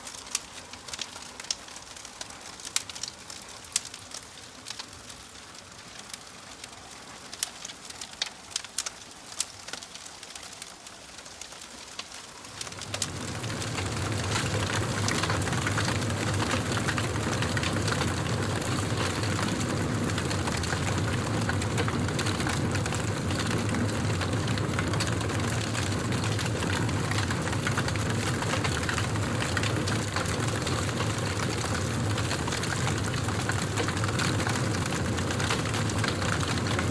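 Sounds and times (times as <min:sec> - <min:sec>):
wood fire crackling and popping: 0:00.0 - 0:36.9.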